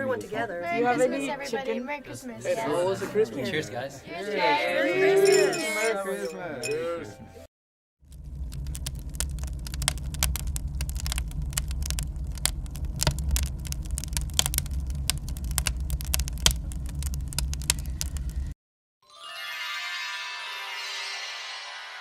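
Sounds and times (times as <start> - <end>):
wood fire crackling: 8.0 - 18.6.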